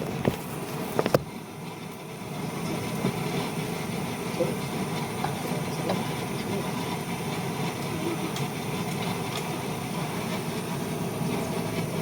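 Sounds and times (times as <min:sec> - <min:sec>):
food sizzling in hot oil: 0:00.0 - 0:12.0
oil popping: 0:00.0 - 0:12.0.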